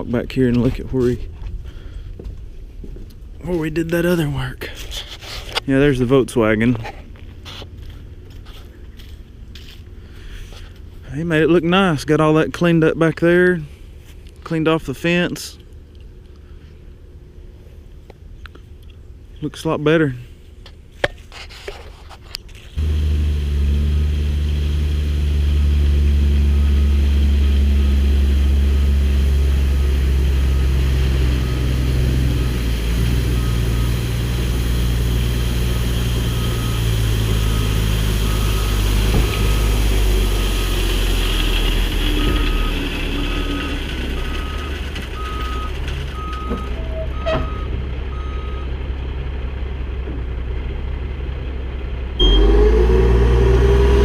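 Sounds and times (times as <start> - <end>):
diesel truck engine running: 22.8 - 54.0
backup alarm beeping: 36.2 - 39.8, 52.2 - 52.6.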